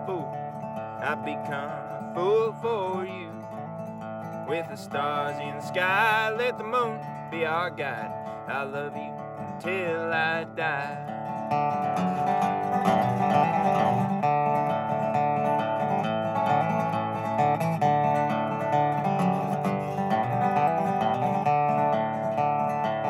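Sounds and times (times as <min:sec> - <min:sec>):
acoustic guitar strummed and picked: 0:00.0 - 0:23.0.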